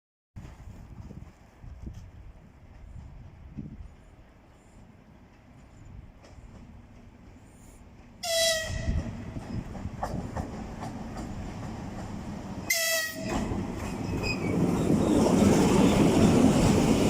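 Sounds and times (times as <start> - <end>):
train rumbling: 0.4 - 17.0
locomotive horn blasts: 8.2 - 9.0, 12.7 - 13.4.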